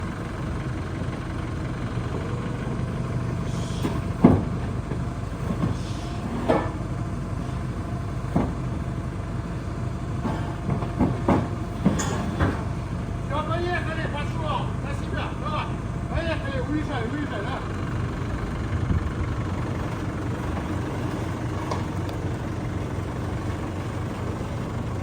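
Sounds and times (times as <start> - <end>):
heavy vehicle engine idling: 0.0 - 25.0
sharp knocks and clunks: 3.8 - 6.9, 8.2 - 8.9, 10.2 - 12.8.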